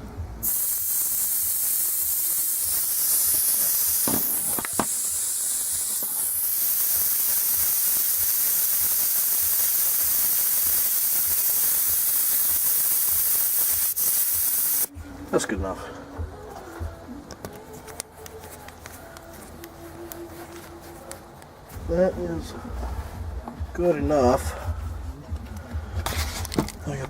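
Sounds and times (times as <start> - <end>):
compressed air hissing through valve: 0.4 - 14.9.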